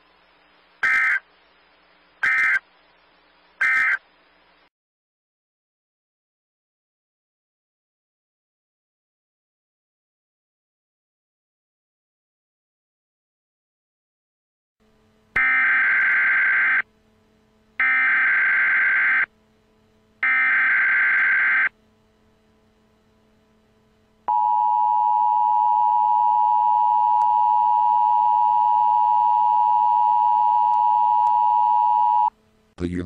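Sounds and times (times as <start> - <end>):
buzzing digital data bursts: 0.8 - 1.3, 2.2 - 2.6, 15.4 - 16.9, 17.8 - 19.4, 20.2 - 21.8.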